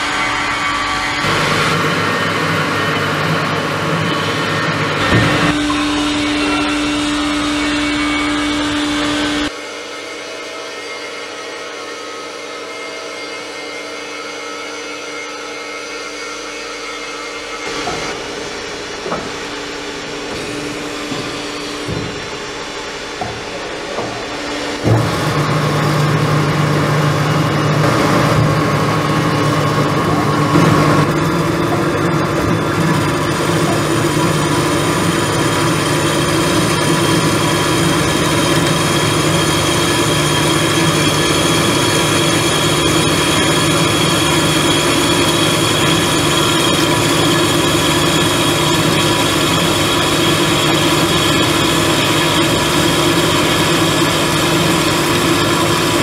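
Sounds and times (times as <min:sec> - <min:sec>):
bandsaw machine hum: 0:00.0 - 0:09.8, 0:14.5 - 0:56.0.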